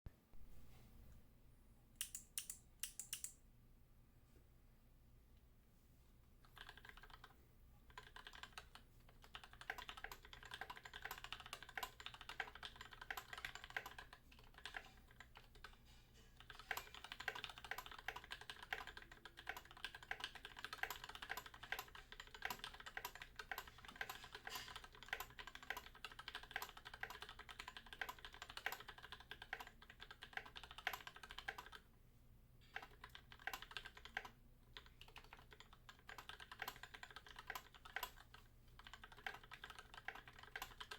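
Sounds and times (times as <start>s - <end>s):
mechanical keyboard typing: 2.0s - 3.4s, 6.4s - 7.3s, 7.9s - 15.8s, 16.4s - 31.8s, 32.7s - 40.9s.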